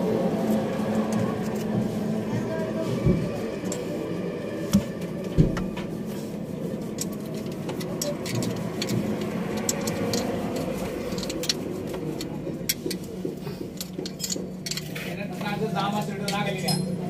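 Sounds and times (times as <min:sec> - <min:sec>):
engine hum: 0:00.0 - 0:15.4
metallic clicks and taps: 0:07.0 - 0:14.9.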